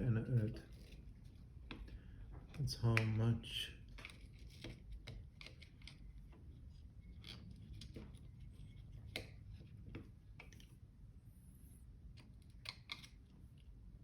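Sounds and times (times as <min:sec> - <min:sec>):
faint clicks of small parts: 0:03.9 - 0:10.8, 0:12.1 - 0:13.7.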